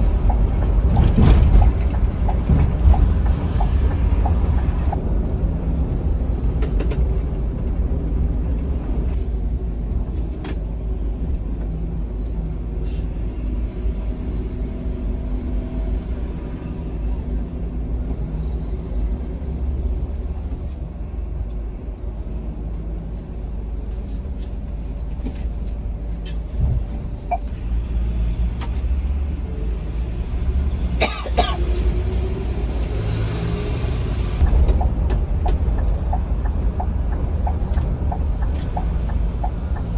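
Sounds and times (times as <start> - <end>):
coach engine and road rumble: 0.0 - 39.9
brief squeal: 18.4 - 20.8, 26.0 - 27.5.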